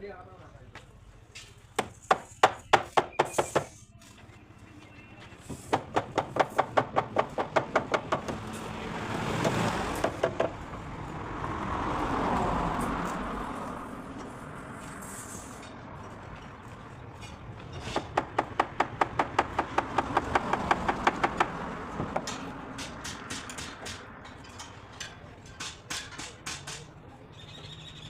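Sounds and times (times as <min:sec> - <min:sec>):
traffic passing: 0:00.0 - 0:28.0
rapid hammering on wood: 0:01.8 - 0:03.7, 0:05.7 - 0:08.4, 0:09.4 - 0:10.6, 0:18.0 - 0:24.1.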